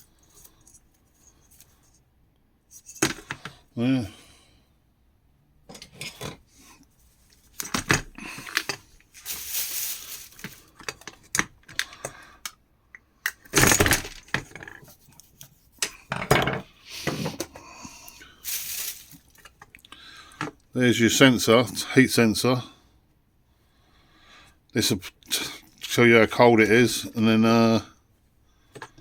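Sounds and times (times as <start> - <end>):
metal parts scraping: 2.7 - 3.3, 7.4 - 11.1, 18.2 - 19.5
clinks and knocks of tools: 7.4 - 12.6, 13.2 - 17.6, 18.2 - 19.8.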